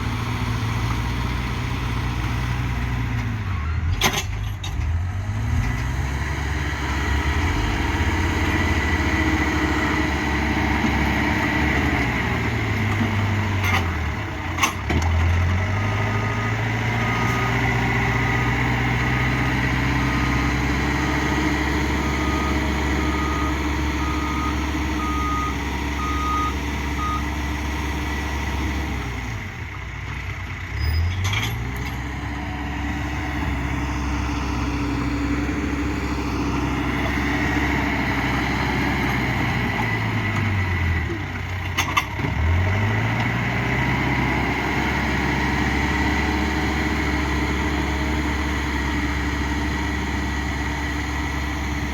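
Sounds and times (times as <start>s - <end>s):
backhoe diesel engine running: 0.0s - 51.9s
reversing alarm beeping: 20.0s - 27.4s.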